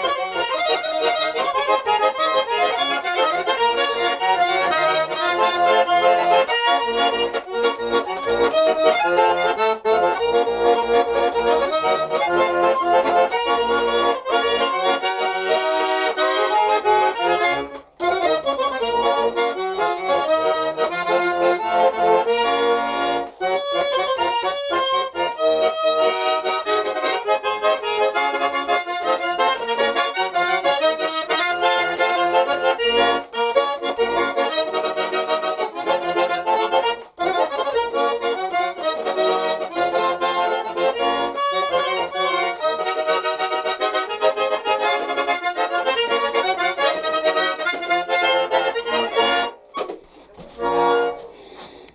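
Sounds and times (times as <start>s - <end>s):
button accordion playing melody: 0.0s - 51.9s.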